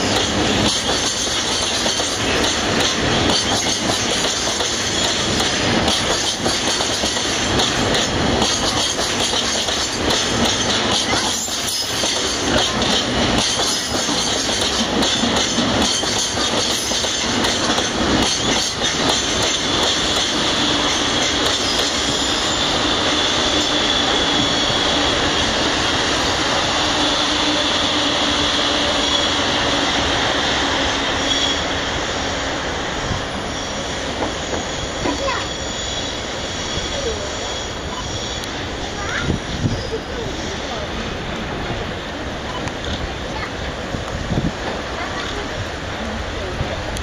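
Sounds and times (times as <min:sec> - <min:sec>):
train wheels clacking over rail joints: 0:00.0 - 0:26.2, 0:34.0 - 0:35.5
high wheel squeal: 0:20.0 - 0:29.9, 0:30.7 - 0:31.8, 0:33.0 - 0:40.5.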